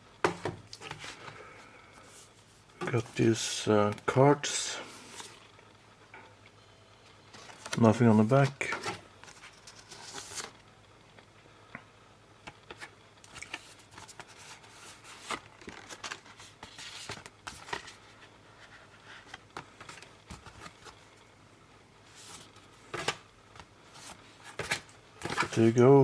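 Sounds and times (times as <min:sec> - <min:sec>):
cardboard packaging rustling: 0:07.3 - 0:10.6, 0:12.6 - 0:21.1.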